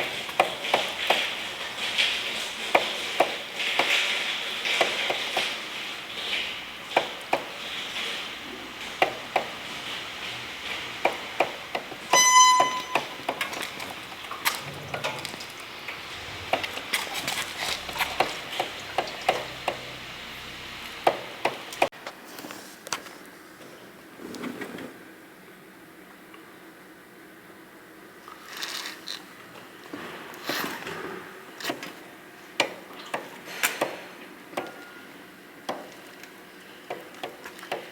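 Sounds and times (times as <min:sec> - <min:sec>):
short beep: 0:12.1 - 0:13.2.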